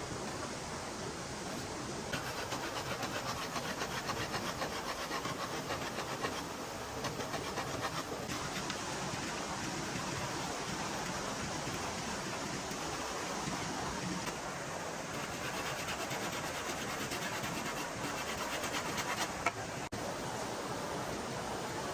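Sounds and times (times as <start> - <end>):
outdoor hiss: 0.0 - 21.9
hand scraping wood: 2.2 - 13.8, 15.1 - 19.6.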